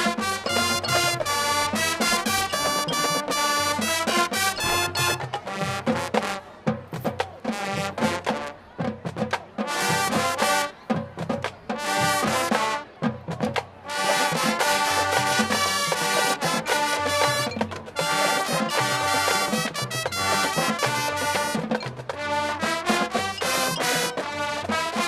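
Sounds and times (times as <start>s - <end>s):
brass hits: 0.0s - 6.4s, 13.9s - 25.0s
held brass chords: 0.0s - 6.4s, 13.9s - 25.0s
drums: 0.0s - 25.0s.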